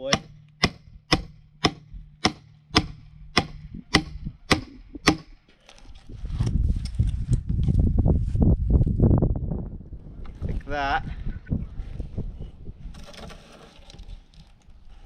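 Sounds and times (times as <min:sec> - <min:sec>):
hammer striking froe: 0:00.0 - 0:05.4.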